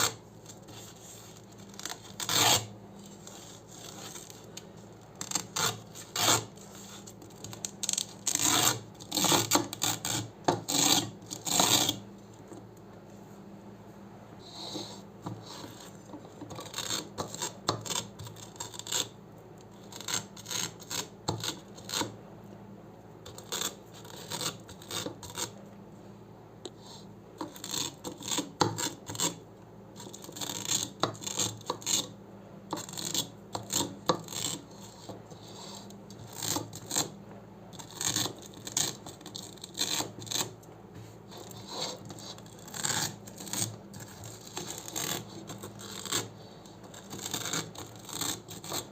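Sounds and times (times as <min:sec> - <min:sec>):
velcro ripping: 0:01.6 - 0:02.7.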